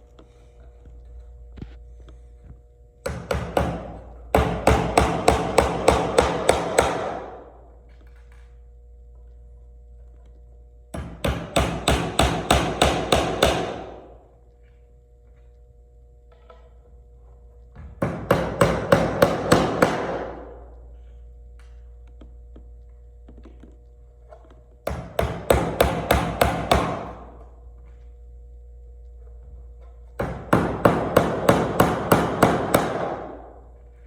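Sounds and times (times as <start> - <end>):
hammer driving nails into wood: 3.1 - 7.4, 11.0 - 14.1, 18.0 - 20.6, 24.8 - 27.4, 30.2 - 33.5.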